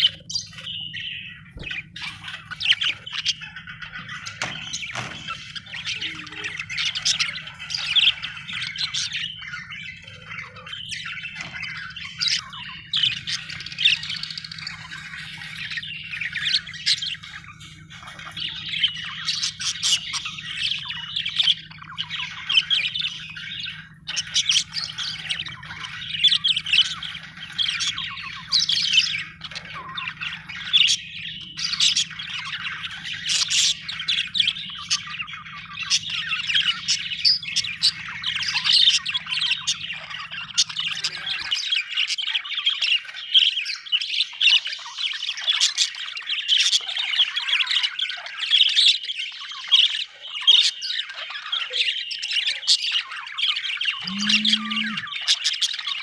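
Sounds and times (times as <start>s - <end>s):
budgerigar chattering: 53.9s - 55.5s.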